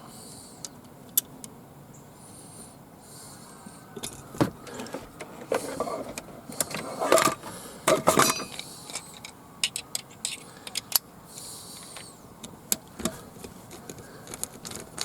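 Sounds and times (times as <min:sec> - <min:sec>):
metal screws and tool clinking: 0:05.5 - 0:12.1.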